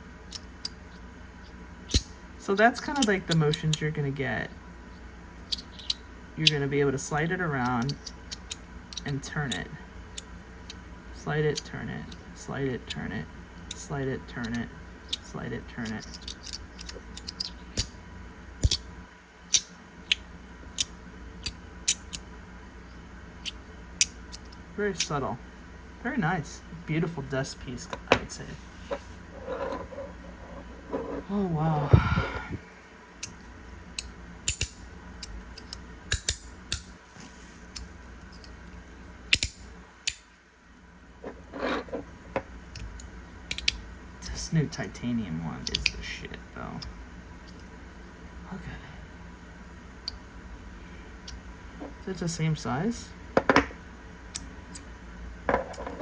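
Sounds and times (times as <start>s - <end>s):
magnetic fidget toy clicks: 34.0s - 34.8s, 35.6s - 36.9s.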